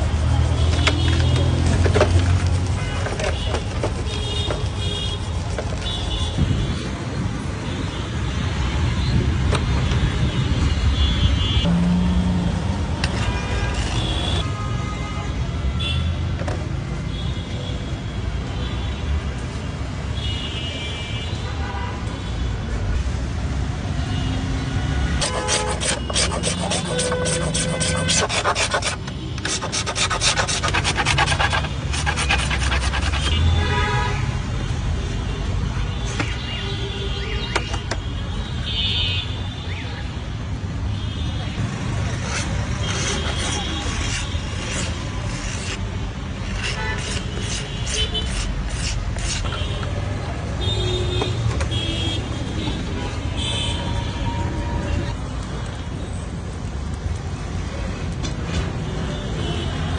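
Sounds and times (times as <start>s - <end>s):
passing vehicles rumbling: 0.0s - 14.5s, 41.6s - 59.1s
hand sanding rasping strokes: 25.2s - 33.4s, 42.1s - 49.5s.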